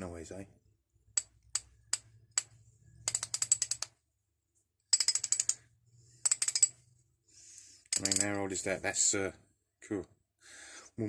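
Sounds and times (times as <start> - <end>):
socket ratchet clicking: 1.2 - 3.9, 4.9 - 5.6, 6.2 - 6.8, 7.9 - 8.4.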